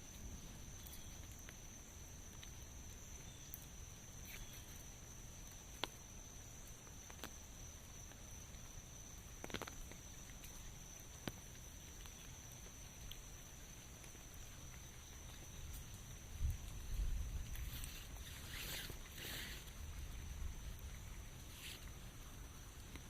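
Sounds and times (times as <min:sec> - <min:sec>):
soft rain hiss: 0:00.0 - 0:23.0
drip-like clicks: 0:09.4 - 0:16.8.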